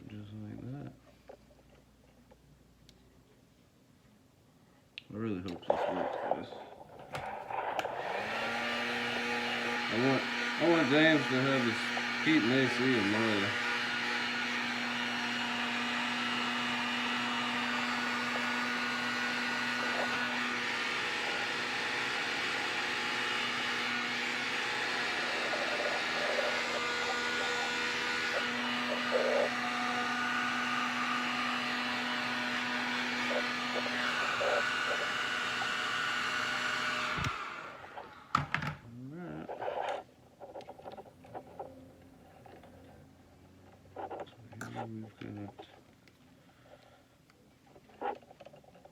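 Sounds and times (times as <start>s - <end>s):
heat gun blowing whine: 7.6s - 38.7s.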